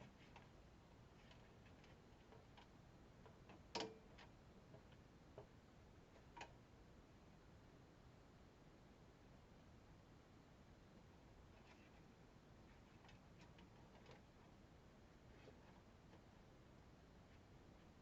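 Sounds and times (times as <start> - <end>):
computer hardware clicks and taps: 1.2 - 5.5.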